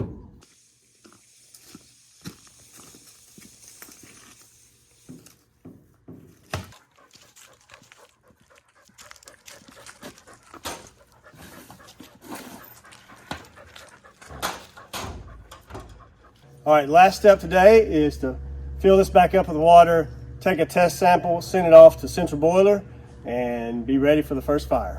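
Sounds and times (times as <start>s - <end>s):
dog panting: 6.3s - 17.4s
knocks and scrapes: 9.0s - 16.5s.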